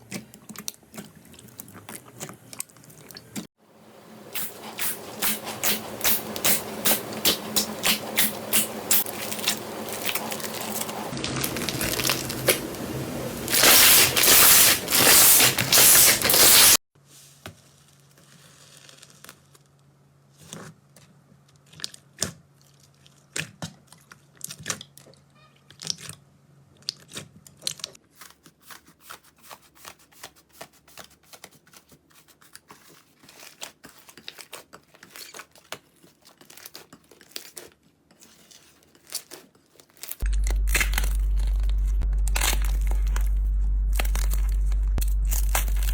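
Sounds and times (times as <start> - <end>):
slime crackling: 5.1 - 16.8, 39.0 - 45.9
steady low hum: 40.2 - 45.9.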